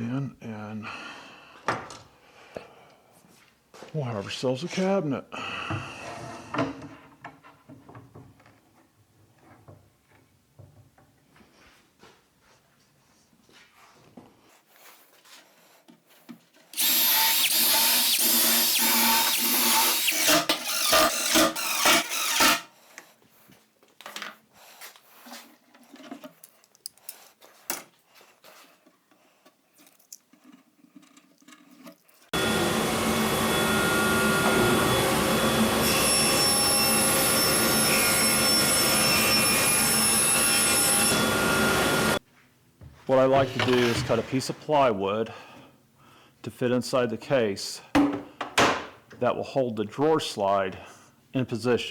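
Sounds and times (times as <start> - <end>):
cordless drill driving screws: 16.7 - 22.7, 43.4 - 44.4
power tool running steadily: 16.8 - 22.7, 32.4 - 42.2.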